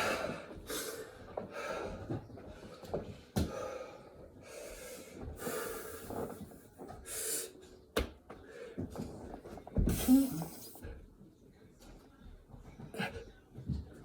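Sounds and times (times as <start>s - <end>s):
man breathing hard and gasping: 0.0s - 2.1s.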